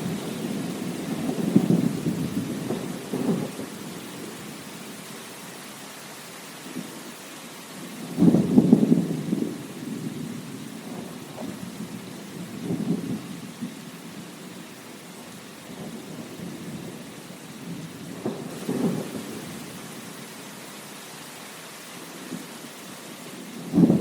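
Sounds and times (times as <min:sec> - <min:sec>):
rolling thunder rumbles: 0:00.0 - 0:05.1, 0:08.0 - 0:14.6, 0:15.7 - 0:20.1, 0:23.2 - 0:24.0
steady rain: 0:00.0 - 0:24.0.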